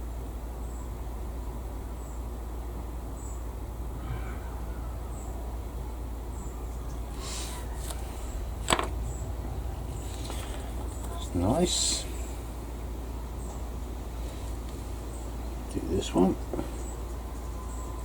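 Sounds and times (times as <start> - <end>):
steady low hum: 0.0 - 18.0
faint rustling: 6.9 - 12.8.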